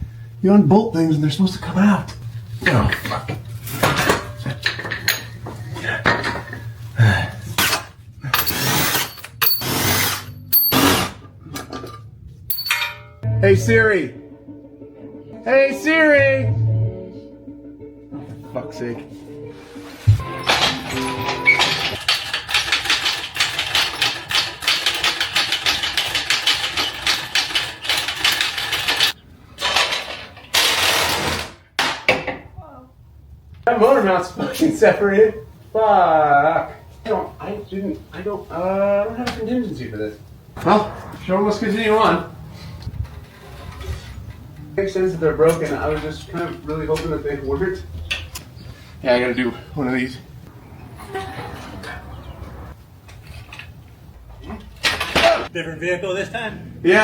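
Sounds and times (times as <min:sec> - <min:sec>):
metallic knocking and rattling: 0:02.6 - 0:06.7, 0:20.2 - 0:32.4.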